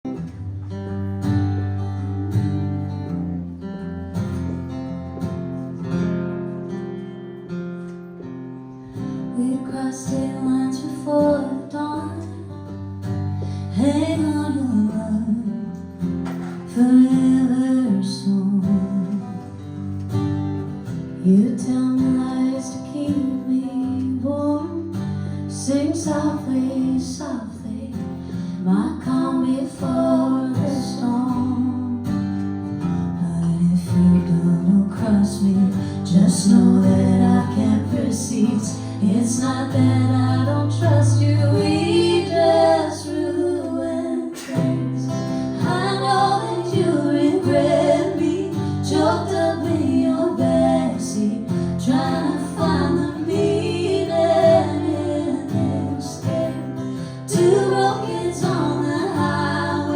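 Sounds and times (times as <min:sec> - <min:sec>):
acoustic guitar chords: 0:00.0 - 0:59.9
person singing: 0:33.2 - 0:59.9.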